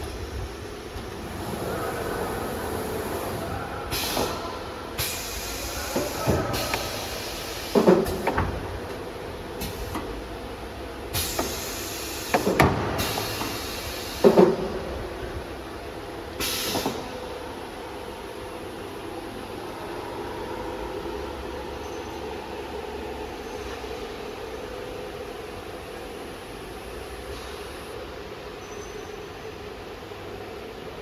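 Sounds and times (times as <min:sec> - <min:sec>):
steady machine hum: 0:00.0 - 0:28.4
compressed air hiss: 0:05.0 - 0:08.2, 0:11.1 - 0:14.5, 0:16.4 - 0:17.0.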